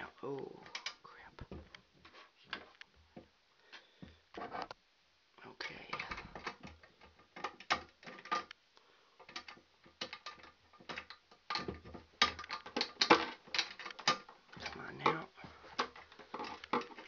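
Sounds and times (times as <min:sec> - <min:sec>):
metallic clicks and scrapes: 0:09.2 - 0:17.0.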